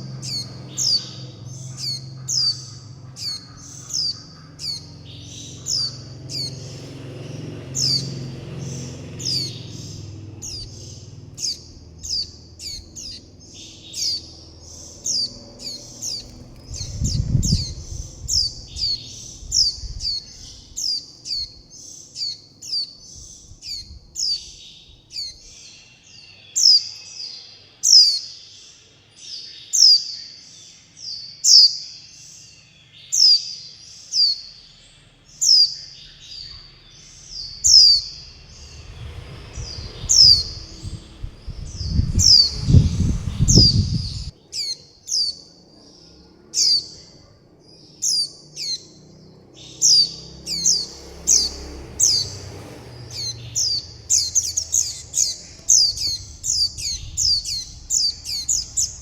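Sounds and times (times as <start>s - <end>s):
low rumble: 0.0s - 21.7s, 36.1s - 44.3s, 50.6s - 59.0s
chicks giving begging calls: 0.0s - 27.0s, 34.2s - 59.0s.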